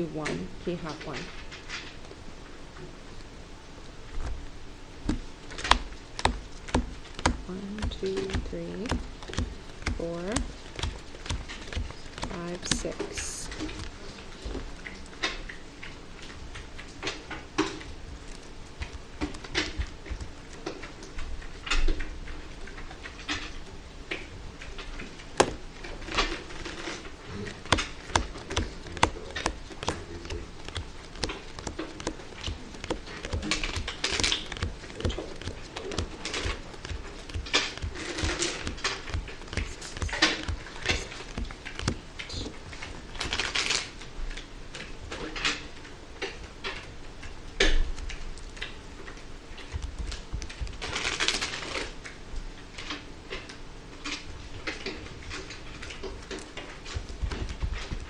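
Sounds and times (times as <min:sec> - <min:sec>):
cards rustling: 0:04.1 - 0:21.6, 0:24.8 - 0:45.9, 0:47.8 - 0:52.1
playing cards shuffled and dealt: 0:05.1 - 0:15.4, 0:26.2 - 0:44.0, 0:49.6 - 0:51.9.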